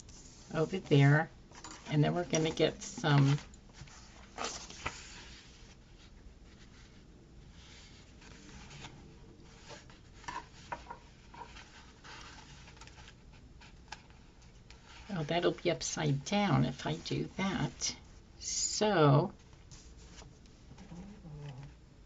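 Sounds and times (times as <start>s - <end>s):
paper sheets rustling: 1.8s - 7.0s, 7.6s - 15.4s.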